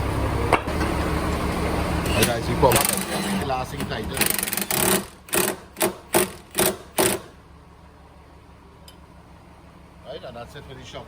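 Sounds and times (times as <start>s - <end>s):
impact wrench hammering: 4.2s - 7.4s.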